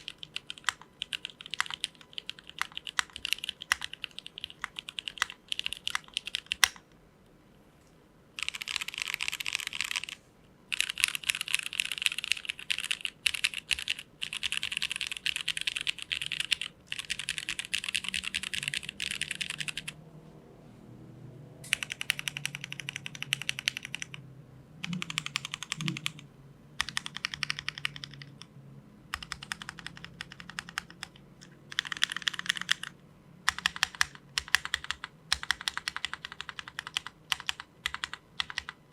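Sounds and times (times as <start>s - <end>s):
mechanical keyboard typing clacks: 0.0s - 6.8s, 8.4s - 20.0s, 21.7s - 24.2s, 24.8s - 26.2s, 26.8s - 28.5s, 29.1s - 38.8s.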